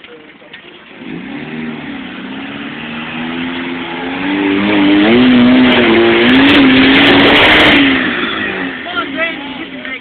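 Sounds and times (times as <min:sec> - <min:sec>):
four-wheel drive engine revving: 0:00.8 - 0:10.0.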